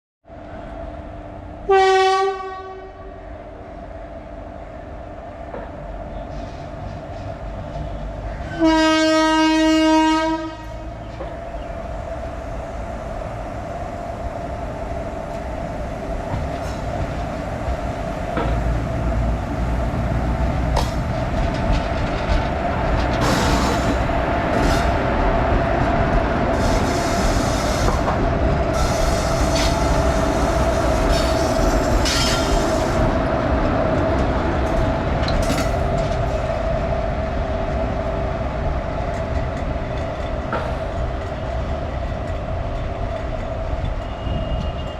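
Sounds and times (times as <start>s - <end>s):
locomotive horn blasts: 1.7s - 3.0s, 8.5s - 10.9s
wheels clicking over rail joints: 16.3s - 27.1s.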